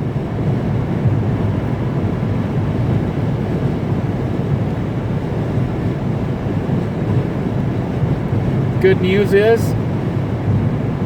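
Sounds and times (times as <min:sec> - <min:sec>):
road and engine rumble: 0:00.0 - 0:11.0
wind gusts buffeting vehicle: 0:00.0 - 0:11.0.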